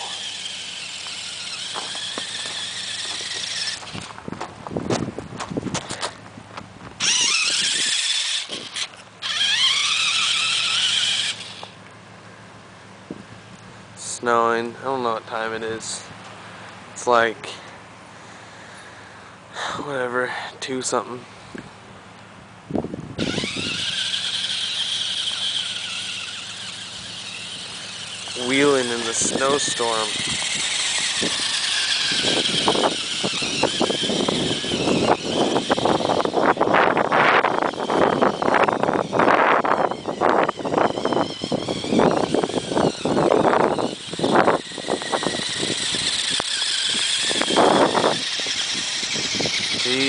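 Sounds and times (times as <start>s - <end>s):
engine revving high-pitched whine: 0.0s - 4.3s, 6.9s - 12.4s, 23.1s - 50.0s.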